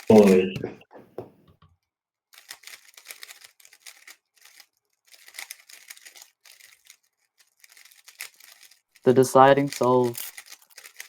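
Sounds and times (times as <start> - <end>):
puzzle cube clicking: 2.4 - 11.0.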